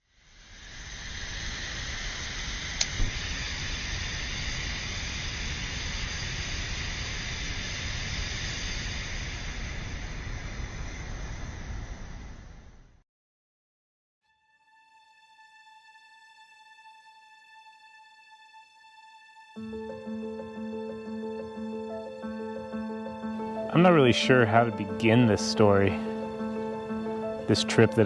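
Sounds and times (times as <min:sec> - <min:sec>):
steady rushing hiss: 0:00.1 - 0:12.6, 0:19.6 - 0:28.0.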